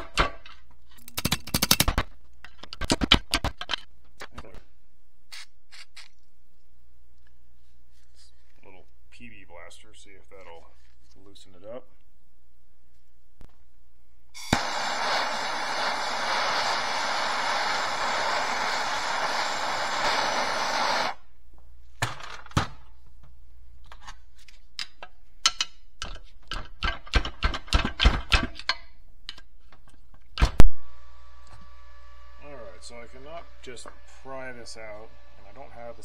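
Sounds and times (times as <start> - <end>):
tools tapping and clicking on metal: 0.0 - 4.4, 24.8 - 29.9
aerosol can spraying hiss: 14.4 - 21.2.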